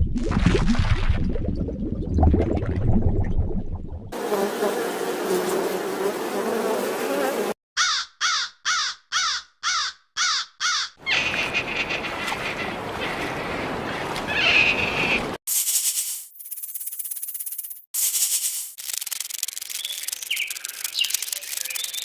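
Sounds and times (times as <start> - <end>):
bird giving harsh calls: 7.8 - 15.3.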